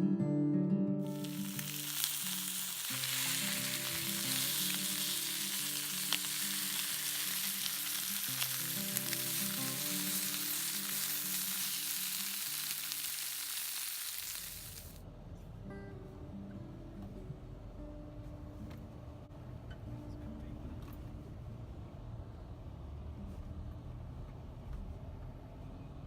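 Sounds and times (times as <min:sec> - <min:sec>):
quiet acoustic guitar music: 0:00.0 - 0:12.9, 0:15.0 - 0:22.0
hiss with crackling ticks: 0:01.1 - 0:15.0.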